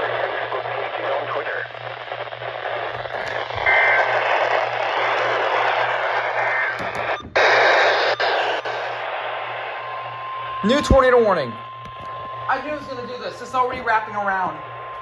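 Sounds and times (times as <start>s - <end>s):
radio static hiss: 0.0s - 15.0s
faint two-tone data burst: 6.4s - 9.1s.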